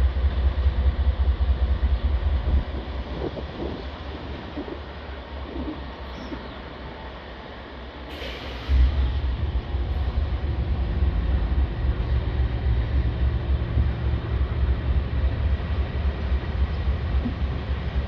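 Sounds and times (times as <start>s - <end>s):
diesel freight train rumbling: 0.0s - 18.0s
brief hiss: 8.1s - 9.1s.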